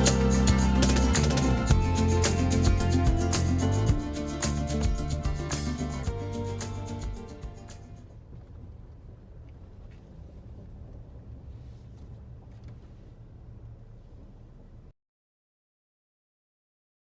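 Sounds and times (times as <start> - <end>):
background music: 0.0 - 8.0
faint low rumble: 0.0 - 15.0.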